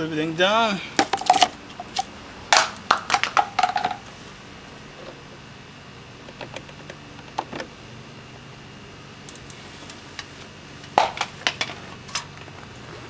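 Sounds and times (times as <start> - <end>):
plastic and metal items clattering: 1.0 - 4.0.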